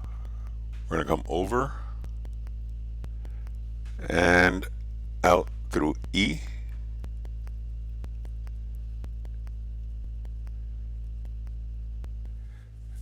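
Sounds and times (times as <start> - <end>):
faint buzz: 0.0 - 13.0
low electrical hum: 0.0 - 13.0
faint clicks: 1.9 - 12.6.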